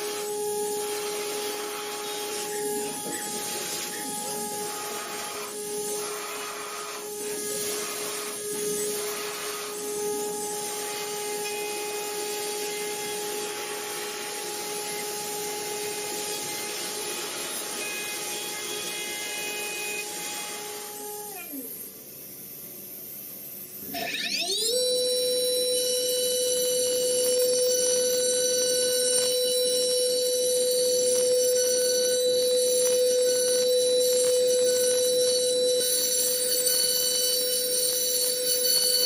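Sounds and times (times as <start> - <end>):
hiss of cutting noise: 0.0 - 21.8
cnc spindle whine: 0.0 - 39.0.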